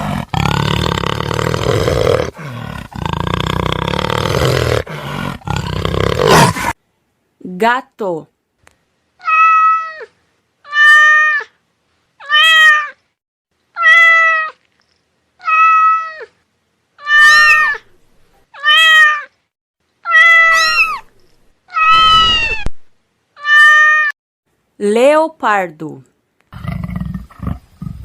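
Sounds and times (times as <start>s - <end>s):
cat meowing: 9.2s - 10.1s, 10.7s - 11.5s, 12.2s - 13.0s, 13.8s - 14.6s, 15.4s - 16.3s, 17.0s - 17.8s, 18.6s - 19.3s, 20.0s - 21.1s, 21.7s - 22.7s, 23.4s - 24.1s.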